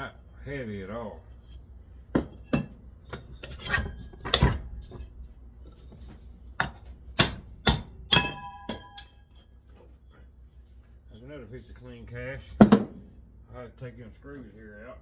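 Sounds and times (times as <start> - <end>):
metal knocks and clanks: 5.9 - 9.4.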